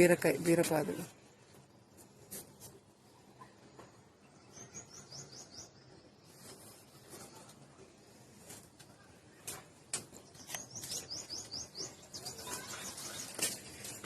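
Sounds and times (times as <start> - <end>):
bird chirping: 3.4 - 6.6, 10.1 - 13.9.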